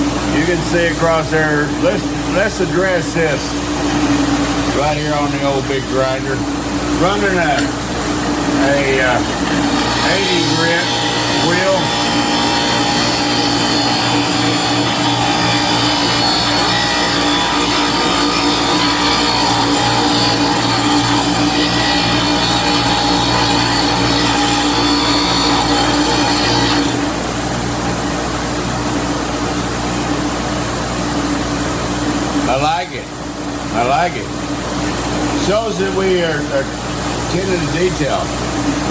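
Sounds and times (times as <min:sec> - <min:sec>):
metal grinding hiss: 0:00.2 - 0:27.4
bench grinder humming: 0:01.7 - 0:28.0.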